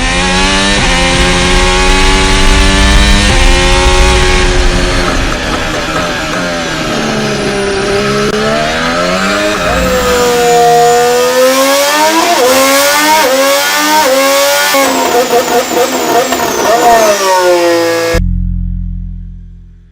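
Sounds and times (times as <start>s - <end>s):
racing car engine at high revs: 0.0s - 18.2s
steady low tone: 18.2s - 19.9s.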